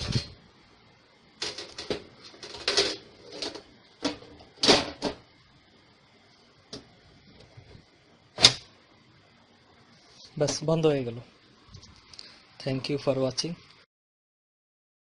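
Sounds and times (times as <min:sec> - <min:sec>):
hard parts clicking and clattering: 0:01.4 - 0:05.2.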